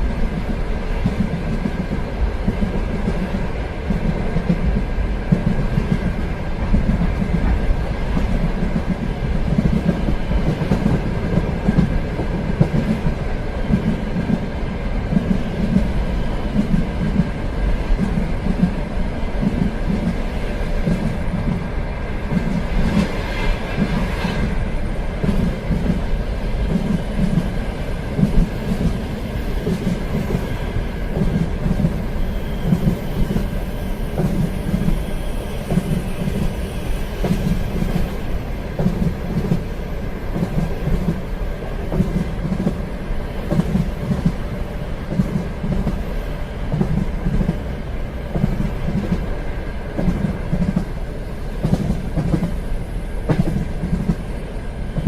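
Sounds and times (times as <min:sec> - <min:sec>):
train rumble: 0:00.0 - 0:55.0.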